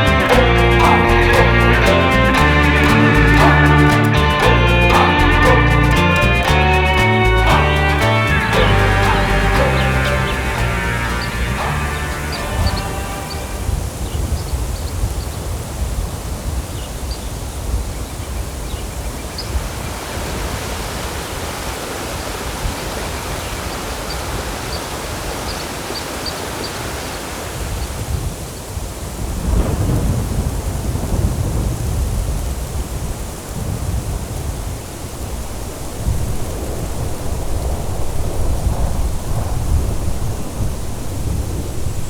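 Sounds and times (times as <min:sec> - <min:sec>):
music: 0:00.0 - 0:13.8
steady rain: 0:00.0 - 0:42.0
rolling thunder: 0:29.2 - 0:42.0.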